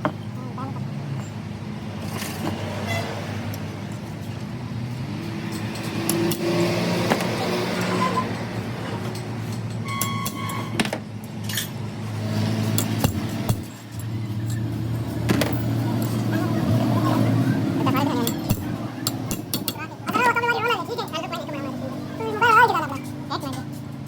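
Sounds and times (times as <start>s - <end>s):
metallic clicks and clinks: 12.7s - 16.3s.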